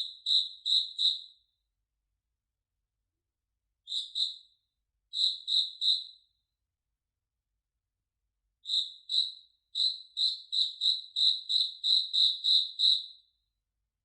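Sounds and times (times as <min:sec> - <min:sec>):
cricket chirping: 0:00.0 - 0:01.2, 0:05.1 - 0:06.0, 0:08.6 - 0:13.1.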